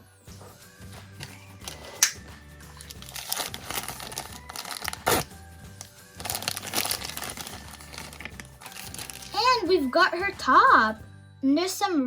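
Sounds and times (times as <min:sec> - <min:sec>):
background music: 0:00.0 - 0:12.0
plastic snap: 0:02.0 - 0:02.2
plastic wrapping crinkling and tearing: 0:02.7 - 0:09.6.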